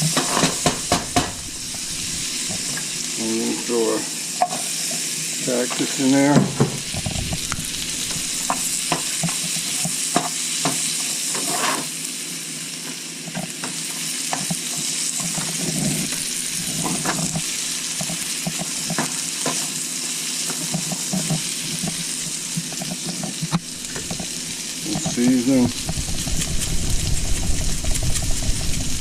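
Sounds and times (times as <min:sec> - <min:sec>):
utensil scraping a pan: 0:00.0 - 0:03.7, 0:11.3 - 0:11.9, 0:20.7 - 0:29.0
cactus pads sizzling in a pan: 0:00.0 - 0:29.0.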